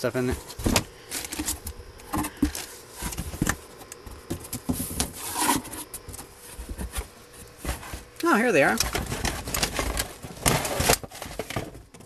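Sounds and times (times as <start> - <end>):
rummaging through boxes: 0.0 - 12.0.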